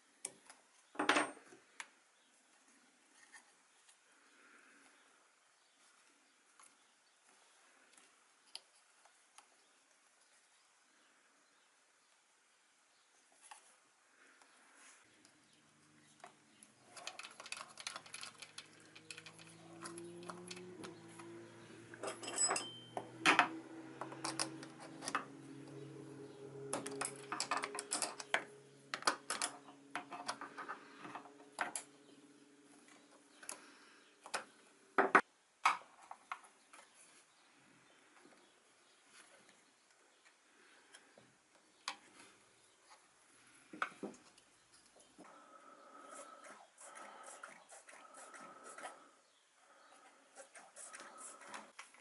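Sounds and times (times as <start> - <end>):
small hard objects clicking: 17.0 - 20.9.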